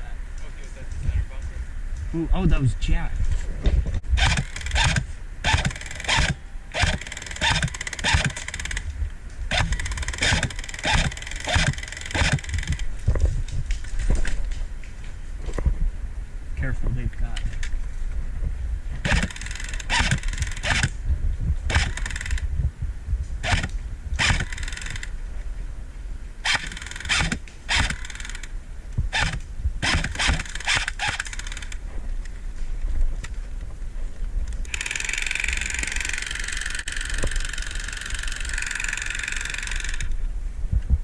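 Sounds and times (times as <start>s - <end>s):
wind rumble on microphone: 0.0s - 31.2s, 31.8s - 34.8s, 40.0s - 41.0s
airsoft machine gun firing: 4.2s - 8.8s, 9.5s - 12.8s, 19.0s - 20.9s, 21.7s - 22.4s, 23.4s - 25.1s, 26.4s - 28.4s, 29.2s - 31.7s.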